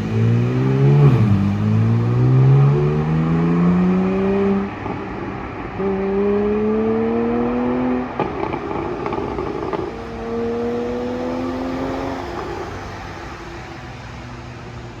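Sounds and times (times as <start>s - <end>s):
car exhaust accelerating: 0.0s - 13.7s
exhaust pops and crackles: 8.1s - 10.0s.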